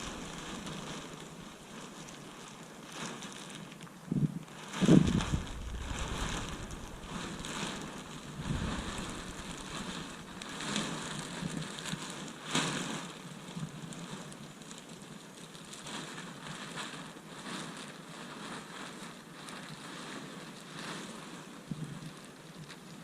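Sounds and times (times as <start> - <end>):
wind noise on microphone: 0.0 - 3.4, 4.0 - 14.3, 19.8 - 22.2.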